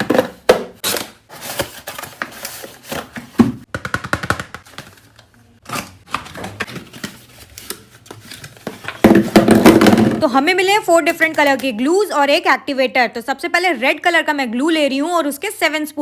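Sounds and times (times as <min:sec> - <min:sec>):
packaging clicks and rustles: 0:00.8 - 0:09.0.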